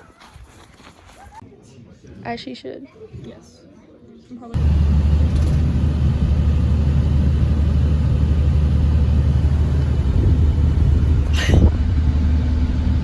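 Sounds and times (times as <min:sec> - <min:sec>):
road and engine rumble in car: 0:04.6 - 0:13.0.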